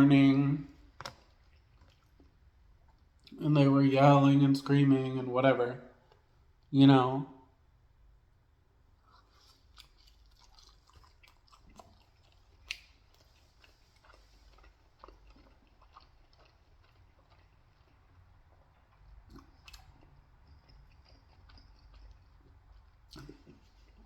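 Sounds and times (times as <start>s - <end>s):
chewing with mouth clicks: 0.6s - 3.4s, 5.9s - 6.7s, 8.9s - 24.0s.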